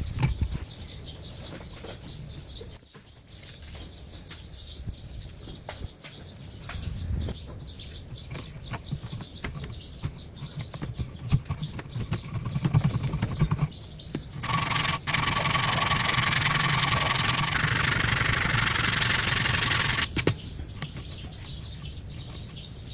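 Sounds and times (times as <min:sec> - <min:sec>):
wood being rubbed and handled: 0:14.4 - 0:20.2
power tool running with whine: 0:14.4 - 0:20.3.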